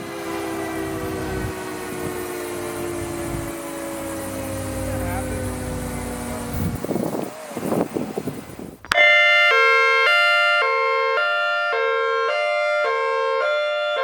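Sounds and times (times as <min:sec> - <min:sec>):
rough rumbling noise: 0:00.0 - 0:09.0
electronic warning siren stepped tone: 0:00.0 - 0:12.9.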